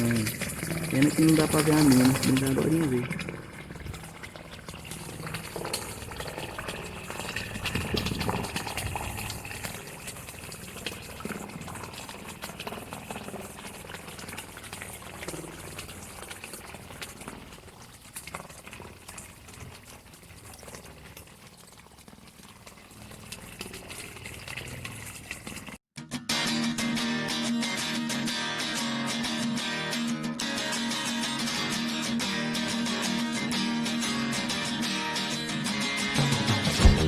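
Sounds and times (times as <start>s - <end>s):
water gushing inside a well: 0.0s - 25.8s.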